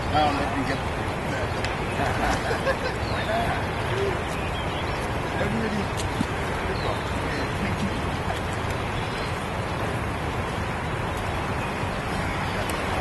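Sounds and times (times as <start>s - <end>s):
rushing water below dam: 0.0s - 13.0s.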